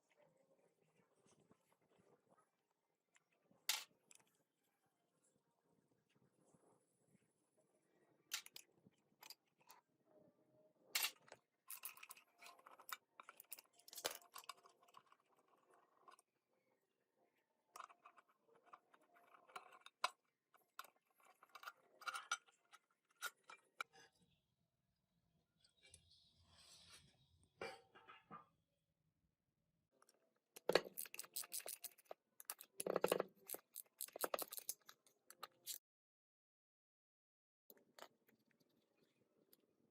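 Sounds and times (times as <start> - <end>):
small parts clicking and scraping: 10.9 - 16.3, 17.7 - 23.9, 30.1 - 35.8.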